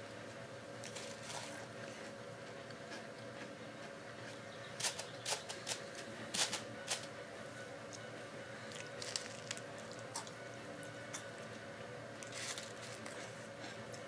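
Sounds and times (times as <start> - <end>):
cereal crunching in mouth: 8.7 - 10.4, 12.2 - 13.3.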